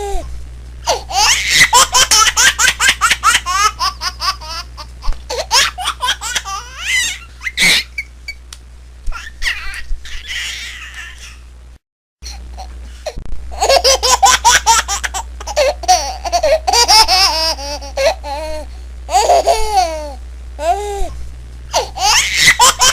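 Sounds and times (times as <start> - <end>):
steady low hum: 0.0 - 22.9
baby giggling: 0.9 - 8.1, 9.1 - 11.4, 13.5 - 20.2, 21.7 - 22.9
baby squealing: 1.1 - 1.8, 5.5 - 8.1, 9.1 - 11.4, 22.0 - 22.9.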